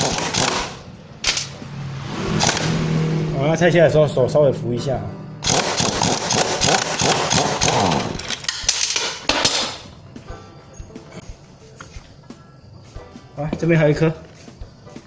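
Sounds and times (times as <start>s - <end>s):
rapid metallic clicking of a tool: 0.0s - 0.8s, 5.4s - 9.6s
handling noises: 1.2s - 1.7s.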